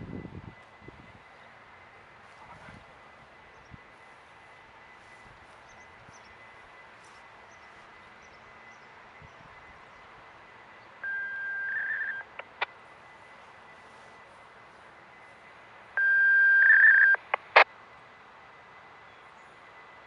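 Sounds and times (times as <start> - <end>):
electronic beep tone: 11.0 - 12.7, 16.0 - 17.6
higher electronic tone: 11.0 - 12.7, 16.0 - 17.6.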